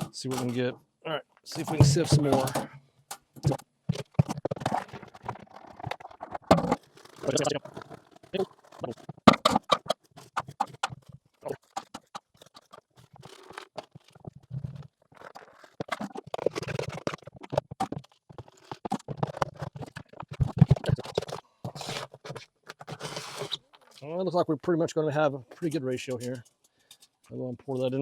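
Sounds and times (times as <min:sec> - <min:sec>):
hand sifter rattling: 0:01.5 - 0:23.2.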